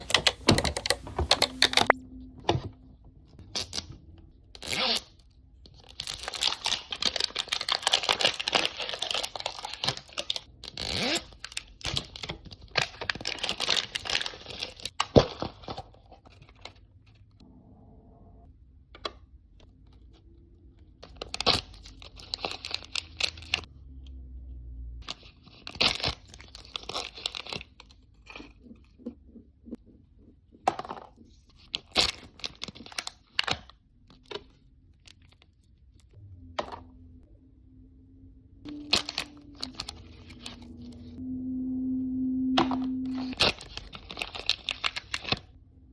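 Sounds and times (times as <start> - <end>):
plastic packaging tearing and crinkling: 5.8 - 15.0, 21.1 - 23.7, 25.1 - 27.8, 43.1 - 45.5.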